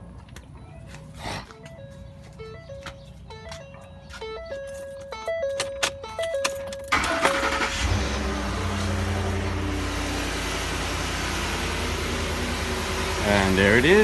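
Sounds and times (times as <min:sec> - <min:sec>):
engine idling: 0:06.9 - 0:14.0.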